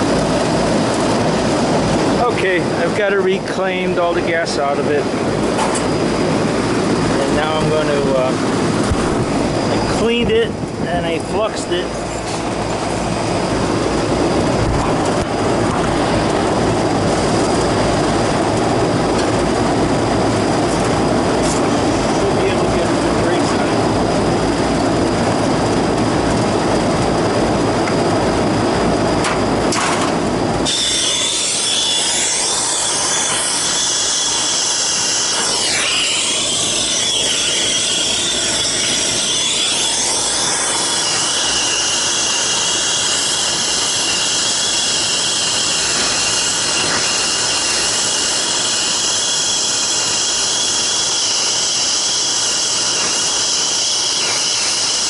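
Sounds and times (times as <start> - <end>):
brazing torch hissing: 30.6 - 55.0.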